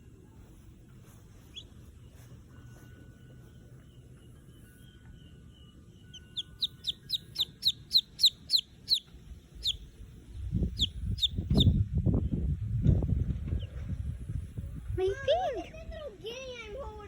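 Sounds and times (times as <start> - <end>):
baby chicks peeping: 0.5 - 11.8.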